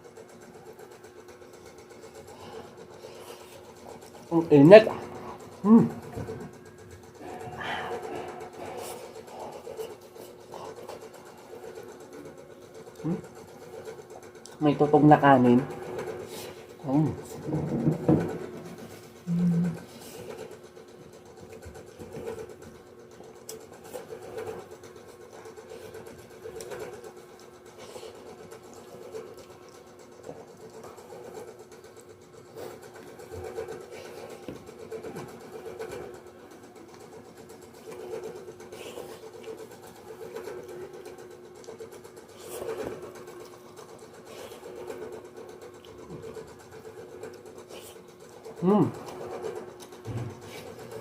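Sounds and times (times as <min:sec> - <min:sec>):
small motor humming: 0:00.8 - 0:37.2.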